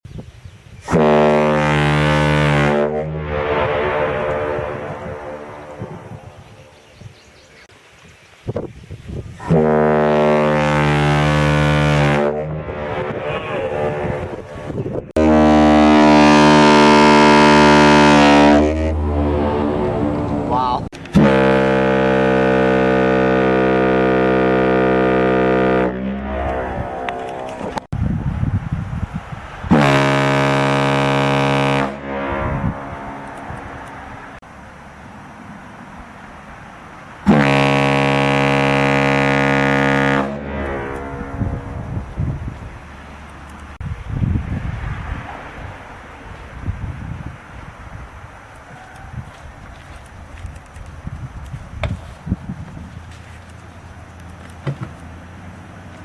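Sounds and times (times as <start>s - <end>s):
pipe horn blast: 0.9s - 6.8s, 9.4s - 27.9s, 29.6s - 34.5s, 37.2s - 43.2s
rough noise: 0.9s - 6.9s, 9.4s - 34.8s, 37.2s - 46.6s.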